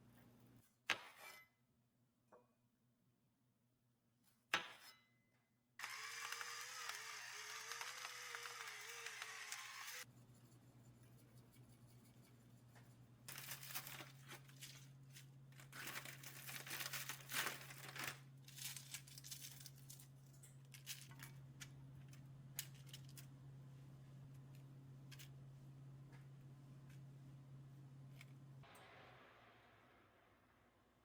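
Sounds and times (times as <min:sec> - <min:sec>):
paper rustling and crinkling: 0:13.3 - 0:20.2.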